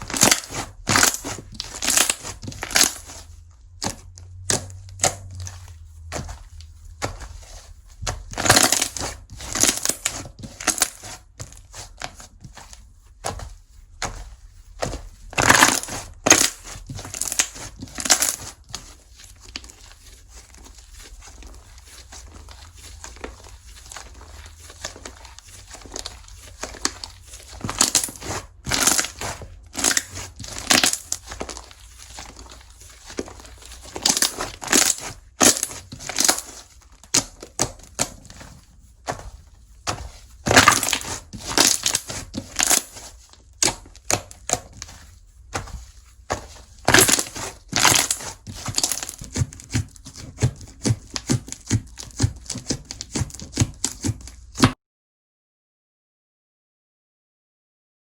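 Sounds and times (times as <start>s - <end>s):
slime crackling and popping: 0.0s - 6.2s, 8.2s - 12.0s, 15.2s - 21.2s, 22.0s - 38.6s, 39.9s - 45.0s, 46.3s - 54.8s.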